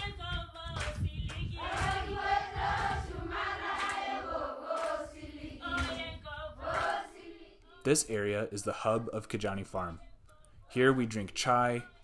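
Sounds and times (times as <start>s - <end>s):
group of voices chanting: 1.6s - 7.8s.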